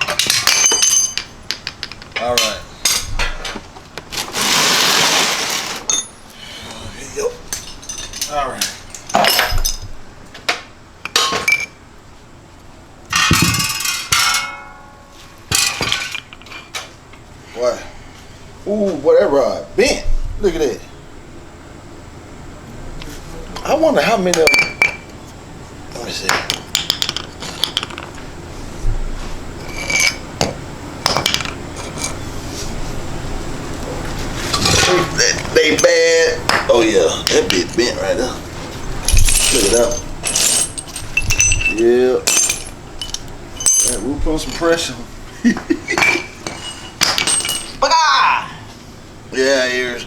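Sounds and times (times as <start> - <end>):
metal clatter with ring: 0.0 - 3.6, 5.9 - 6.4, 7.5 - 9.9, 11.0 - 11.8, 13.1 - 16.9, 29.6 - 30.4, 34.5 - 44.9, 45.9 - 47.8
metal engine parts clinking: 0.0 - 3.7, 5.2 - 6.4, 7.4 - 11.8, 13.1 - 17.2, 24.2 - 25.1, 26.2 - 28.2, 29.5 - 32.3, 34.4 - 47.8.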